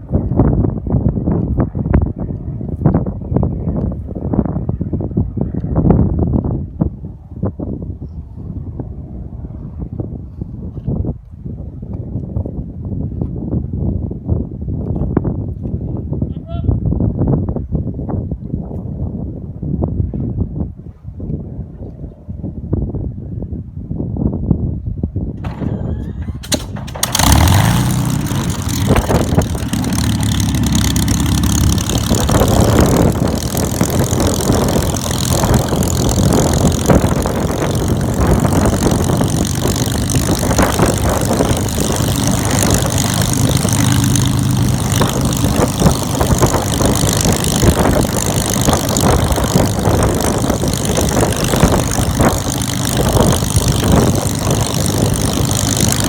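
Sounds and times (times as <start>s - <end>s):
aircraft piston engine running: 25.4s - 56.0s.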